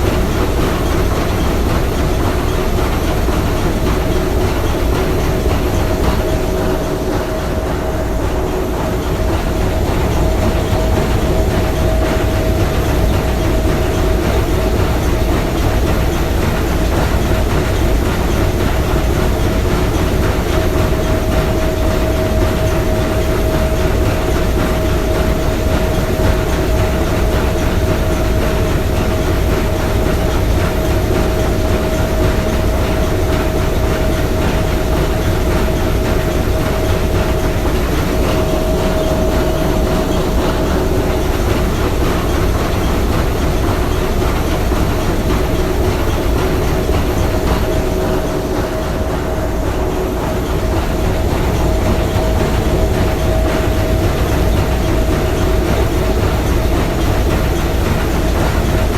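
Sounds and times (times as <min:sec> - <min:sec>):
steam engine running: 0:00.0 - 0:58.9
steady tone: 0:35.8 - 0:54.9.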